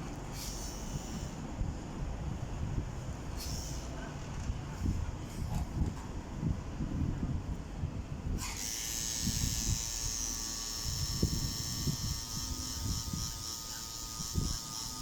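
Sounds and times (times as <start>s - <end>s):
tattoo machine buzzing: 0.3s - 1.4s, 3.4s - 3.9s, 8.4s - 15.0s.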